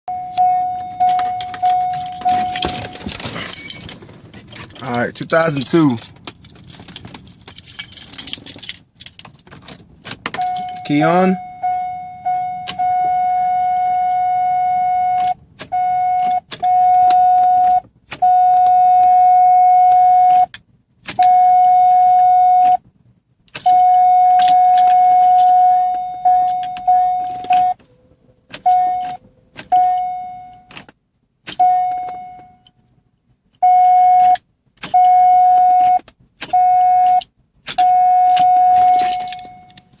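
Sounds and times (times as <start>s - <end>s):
high electronic warning chime: 0.1s - 3.8s, 10.4s - 15.4s.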